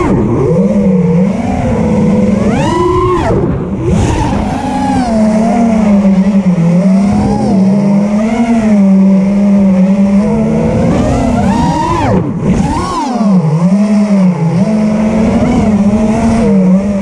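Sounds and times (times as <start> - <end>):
drone motors whining: 0.0 - 17.0.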